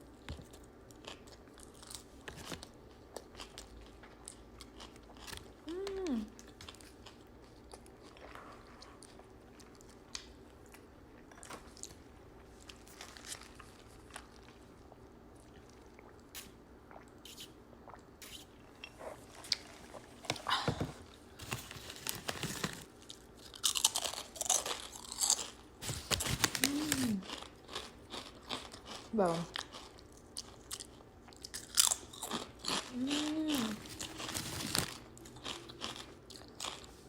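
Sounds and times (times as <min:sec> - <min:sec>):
soft chewing with mouth clicks: 0:00.0 - 0:20.5.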